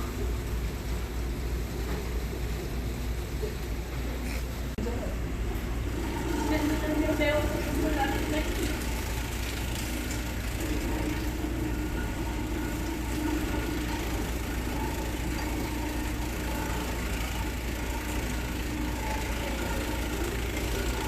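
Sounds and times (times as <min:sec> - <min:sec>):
slicing machine motor hum: 0:05.5 - 0:21.0
faint steady tones: 0:05.8 - 0:21.0.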